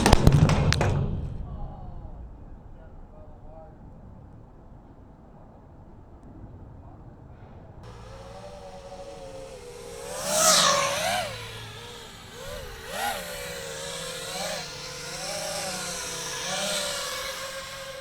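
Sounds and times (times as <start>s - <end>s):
quadcopter motors whining: 7.8s - 18.0s.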